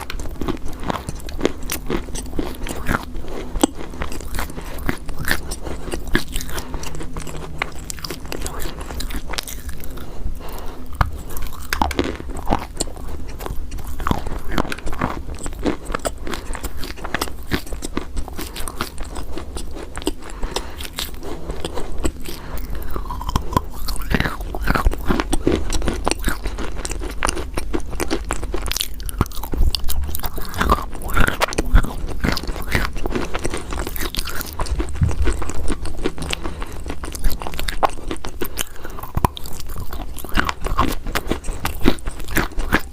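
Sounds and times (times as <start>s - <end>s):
chalk being bitten and chewed: 0.0s - 42.9s.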